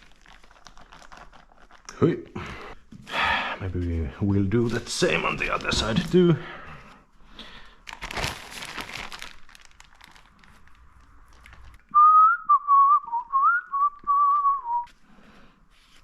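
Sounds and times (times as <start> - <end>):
man whistling a tune: 11.9 - 14.9.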